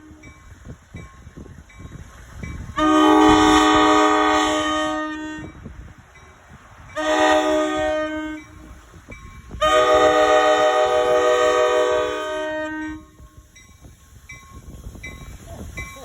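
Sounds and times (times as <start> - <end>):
low rumble of moving train: 0.0 - 16.0
train horn blasts: 2.7 - 5.7, 6.9 - 8.7, 9.6 - 13.3.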